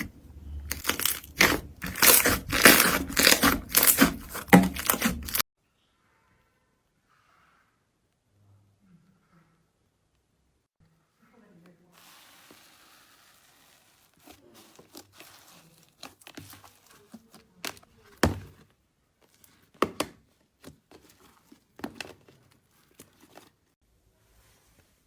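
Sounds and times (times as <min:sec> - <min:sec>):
slime crackling and popping: 0:00.7 - 0:05.4.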